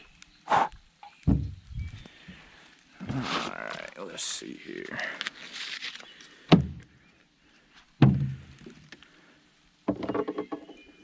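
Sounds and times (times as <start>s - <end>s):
hollow knocks: 1.3s - 1.6s, 8.0s - 8.4s.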